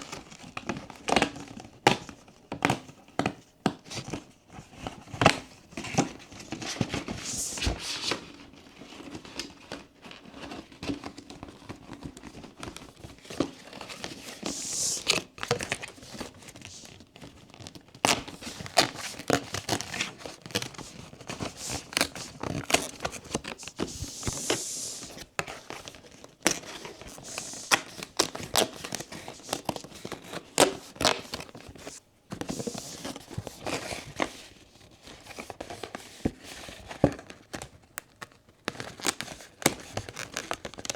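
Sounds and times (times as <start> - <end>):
packaging rustling: 6.3 - 34.3
packaging crinkling and tearing: 37.2 - 40.9.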